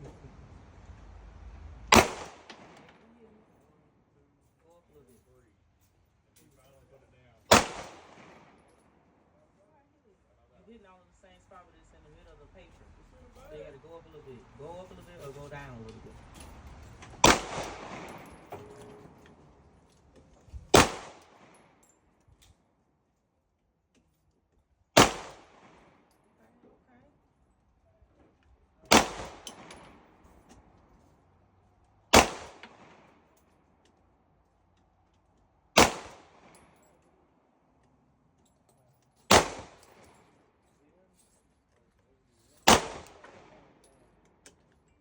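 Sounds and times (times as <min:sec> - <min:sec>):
gunshots with reverberation: 0:01.9 - 0:03.0, 0:07.5 - 0:08.7, 0:17.2 - 0:19.2, 0:20.7 - 0:21.6, 0:25.0 - 0:26.1, 0:28.9 - 0:30.2, 0:32.1 - 0:33.1, 0:35.8 - 0:36.7, 0:39.3 - 0:40.1, 0:42.6 - 0:43.8
faint metallic clink: 0:02.8 - 0:07.5, 0:18.0 - 0:20.4.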